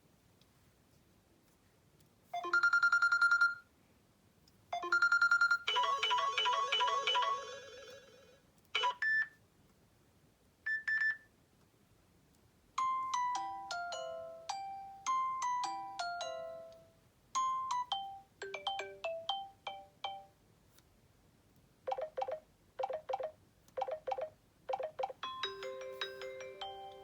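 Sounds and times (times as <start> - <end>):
rapid trilling phone ring: 4.8 - 9.0
rhythmic electronic ringtone tune: 4.8 - 9.0, 21.9 - 27.0.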